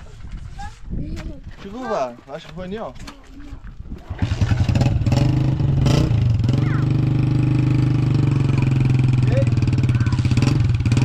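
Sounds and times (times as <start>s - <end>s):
engine starting and running: 4.1s - 11.0s.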